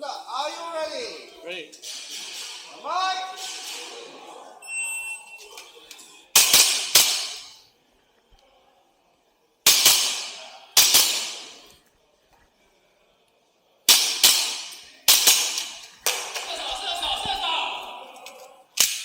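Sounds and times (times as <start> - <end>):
airsoft pistol shots echoing: 9.7 - 11.5.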